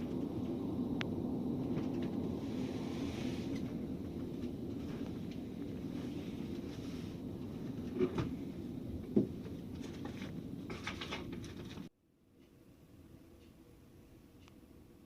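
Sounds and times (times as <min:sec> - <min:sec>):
car cabin rumble: 0:00.0 - 0:11.9.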